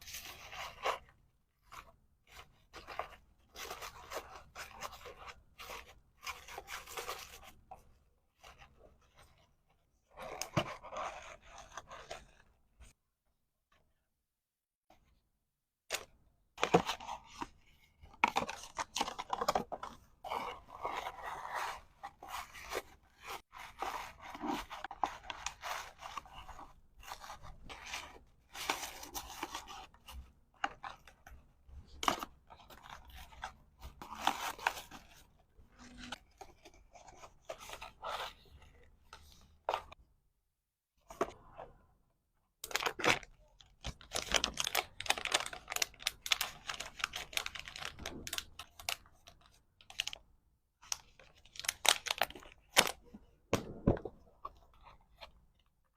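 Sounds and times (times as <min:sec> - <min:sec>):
packaging rustling and tearing: 0:42.6 - 0:49.0.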